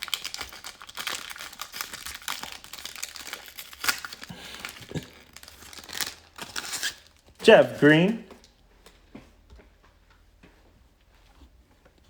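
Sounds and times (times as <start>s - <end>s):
foil wrapper crinkling: 0.0s - 7.8s.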